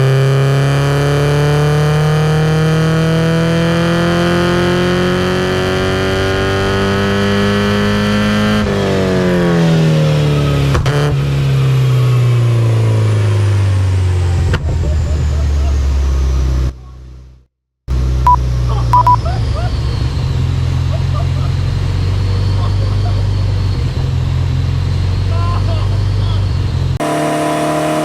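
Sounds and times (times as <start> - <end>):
car engine revving on a dyno: 0.0 - 14.6, 26.5 - 28.0.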